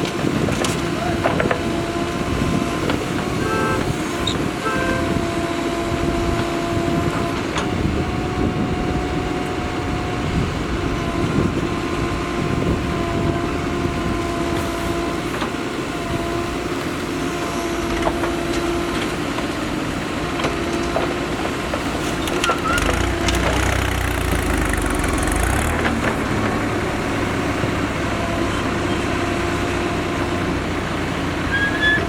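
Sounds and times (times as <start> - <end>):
diesel engine rumble: 0.0 - 32.0
steady whine: 22.2 - 28.9.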